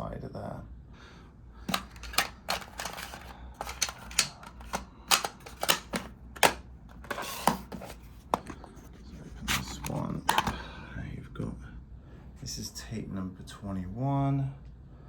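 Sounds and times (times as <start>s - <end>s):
plastic cassette shells clicking: 1.7s - 10.6s.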